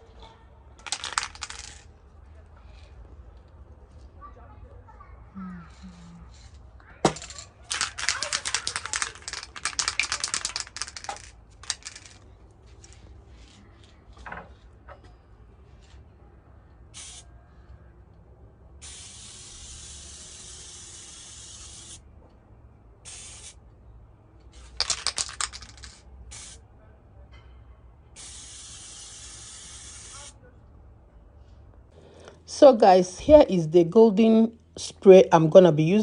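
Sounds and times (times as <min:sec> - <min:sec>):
spray can mixing ball rattling: 0:00.8 - 0:01.9, 0:07.1 - 0:12.2, 0:24.6 - 0:26.6
spray paint can hissing: 0:07.7 - 0:12.2, 0:17.0 - 0:17.3, 0:18.8 - 0:22.0, 0:23.0 - 0:23.6, 0:24.6 - 0:26.6, 0:28.2 - 0:30.4.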